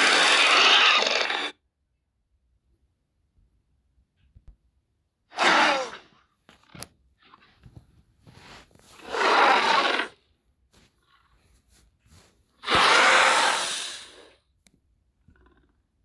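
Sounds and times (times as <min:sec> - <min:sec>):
harsh breathy hissing calls: 0:00.0 - 0:01.6, 0:05.3 - 0:06.1, 0:09.0 - 0:10.2, 0:12.6 - 0:14.4.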